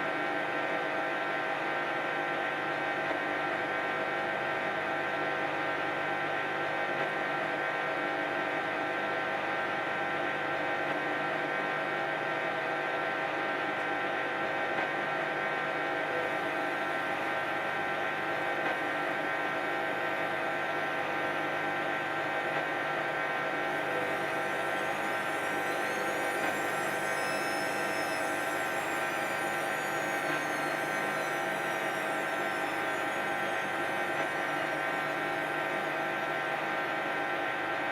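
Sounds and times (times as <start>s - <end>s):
washing machine spin whine: 0.0s - 37.9s
faint high whistle: 23.7s - 37.0s.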